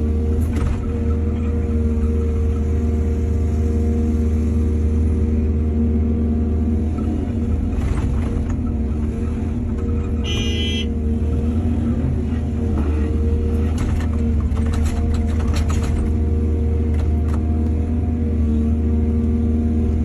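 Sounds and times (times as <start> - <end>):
diesel machinery running: 0.0 - 20.0
brief high tone: 10.2 - 10.9
knocks and clatters: 13.6 - 16.2.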